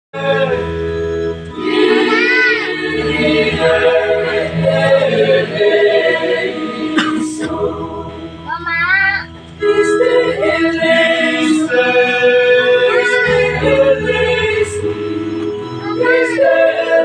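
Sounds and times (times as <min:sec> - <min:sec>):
mixed choir singing: 0:00.1 - 0:17.0.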